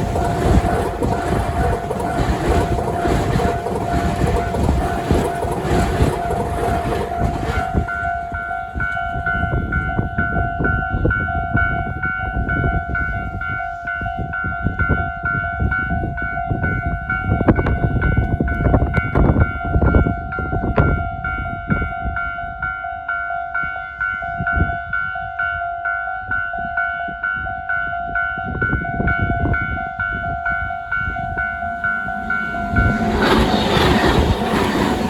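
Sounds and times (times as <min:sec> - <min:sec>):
train passing: 0:00.0 - 0:09.5, 0:29.0 - 0:35.0.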